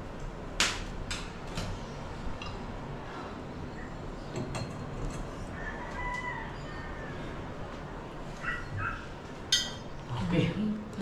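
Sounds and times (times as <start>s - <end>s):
faint animal calls: 8.4s - 9.2s.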